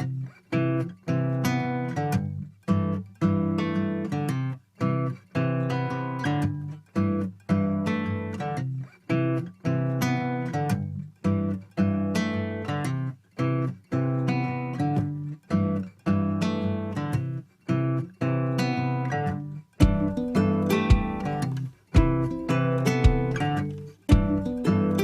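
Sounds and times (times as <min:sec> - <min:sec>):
acoustic guitar strumming: 0:00.0 - 0:25.0.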